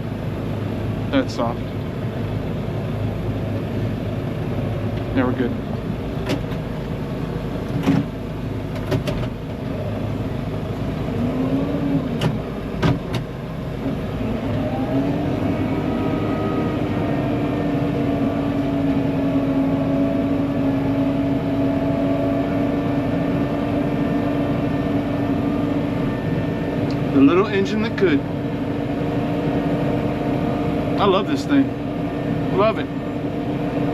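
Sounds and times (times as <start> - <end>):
vehicle engine under load: 0.0 - 33.9.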